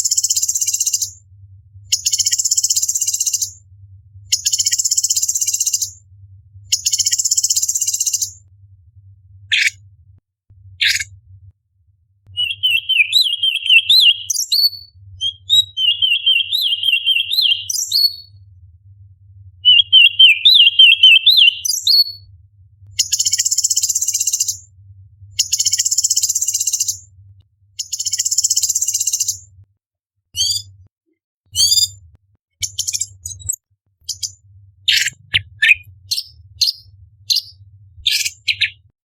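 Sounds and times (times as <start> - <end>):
bird warbling whistled notes: 12.4 - 18.2, 19.7 - 22.1.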